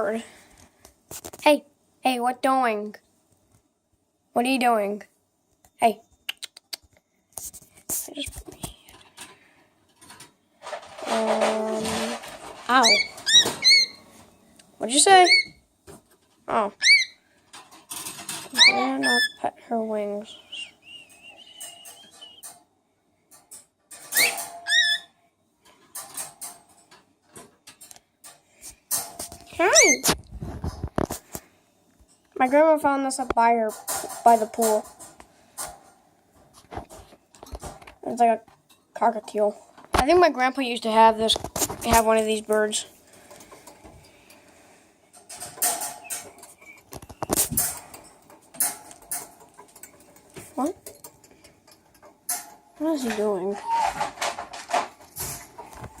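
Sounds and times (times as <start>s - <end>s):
clicks and rustles: 5.5s - 14.8s, 17.3s - 18.6s, 20.9s - 22.7s, 25.6s - 32.6s, 33.2s - 40.2s, 40.9s - 56.0s
parrot scratching and tapping: 6.8s - 14.0s, 15.3s - 19.3s, 45.2s - 56.0s
parrot chirping: 12.8s - 14.1s, 15.1s - 15.6s, 16.8s - 17.2s, 18.5s - 19.4s, 20.3s - 22.5s, 24.1s - 25.2s, 29.7s - 30.0s, 46.0s - 47.4s
bird chirp: 20.2s - 22.5s, 46.0s - 47.3s.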